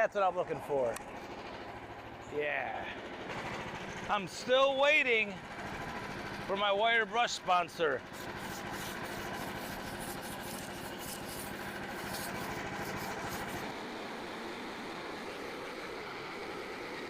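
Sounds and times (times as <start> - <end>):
small engine running: 0.2 - 17.0
wire brush scrubbing bark: 8.0 - 13.9.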